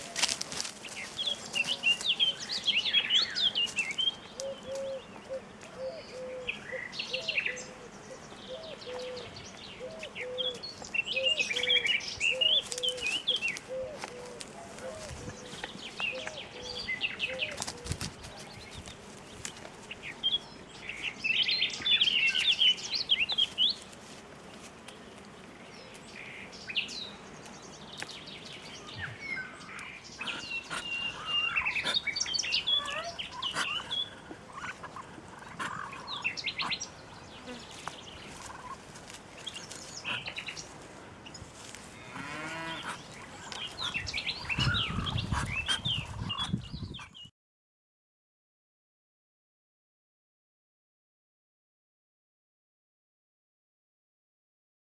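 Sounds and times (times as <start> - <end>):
drawn-out farm animal call: 0.0 - 19.2, 28.8 - 41.0, 41.6 - 47.1
songbirds chirping and singing: 0.0 - 47.3.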